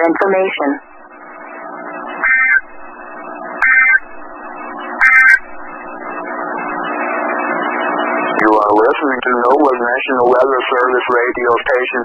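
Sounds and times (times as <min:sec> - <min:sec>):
steady hum: 0:00.0 - 0:12.0
two-tone digital data bursts: 0:02.2 - 0:06.1.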